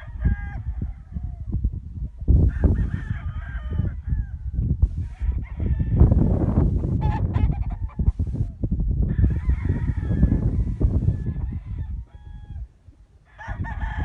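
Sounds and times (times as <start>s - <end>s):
chickens calling: 5.0s - 8.6s, 9.2s - 12.7s.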